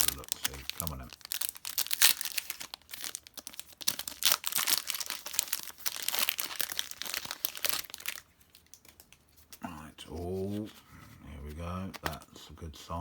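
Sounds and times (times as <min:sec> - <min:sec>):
foil wrapper tearing and crinkling: 0:00.0 - 0:08.7.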